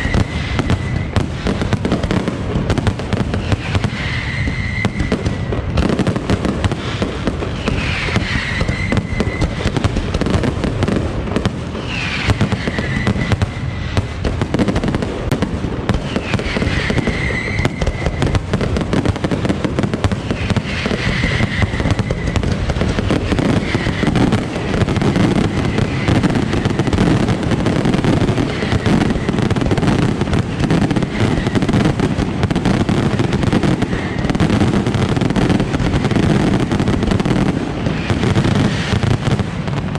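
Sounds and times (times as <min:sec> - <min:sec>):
high falling whistle: 0:00.0 - 0:01.2, 0:03.4 - 0:05.6, 0:07.6 - 0:09.9, 0:11.8 - 0:14.0, 0:16.1 - 0:18.5, 0:20.3 - 0:22.5
fireworks bangs and crackling: 0:00.0 - 0:39.9.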